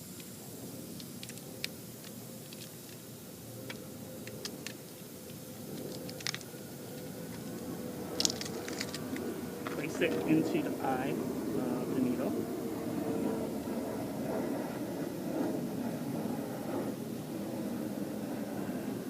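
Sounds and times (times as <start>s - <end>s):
steady hum with tone: 0.0s - 19.0s.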